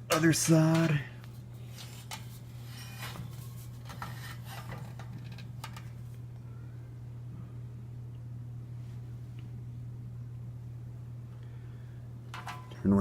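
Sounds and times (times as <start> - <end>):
metal fan being handled: 0.0 - 6.2, 12.3 - 12.8
steady low hum: 0.0 - 13.0.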